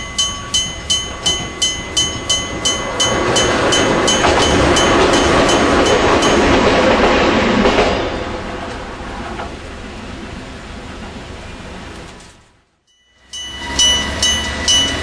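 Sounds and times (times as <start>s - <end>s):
level crossing bell ringing: 0.0s - 6.7s, 13.0s - 15.0s
train running noise: 0.0s - 12.6s, 13.2s - 15.0s.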